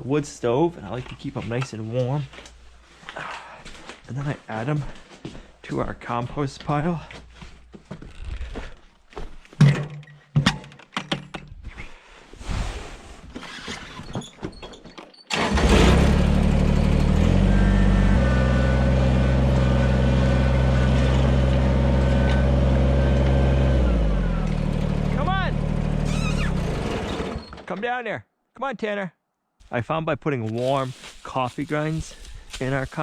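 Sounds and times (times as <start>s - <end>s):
knocks and clattering: 9.6s - 11.6s
vehicle engine running: 15.5s - 27.3s.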